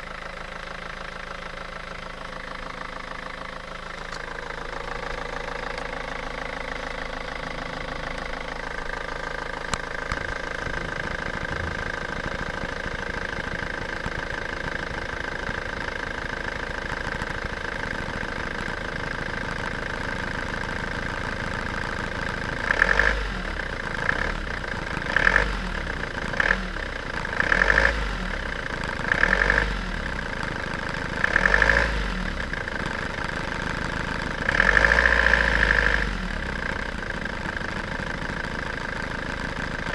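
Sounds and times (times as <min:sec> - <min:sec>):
engine running with surges: 0:08.6 - 0:15.6, 0:33.9 - 0:38.1.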